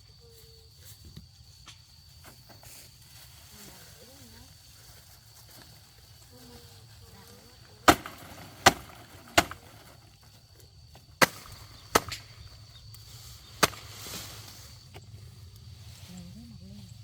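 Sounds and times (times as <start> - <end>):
sharp chopping blows: 11.2 - 12.3, 13.5 - 13.9.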